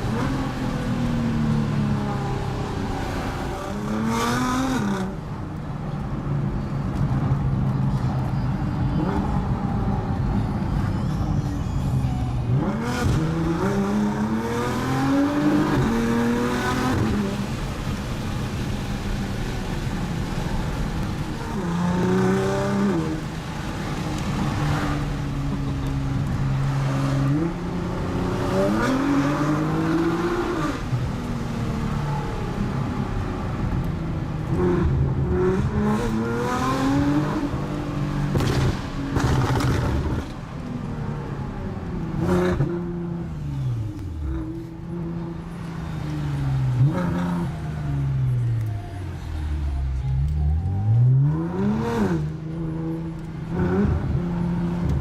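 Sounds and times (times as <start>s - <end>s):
car engine revving through gears: 3.1s - 5.2s, 12.5s - 17.5s, 26.6s - 31.4s, 34.4s - 40.3s, 50.8s - 55.0s
exhaust crackles and pops: 38.3s - 40.8s.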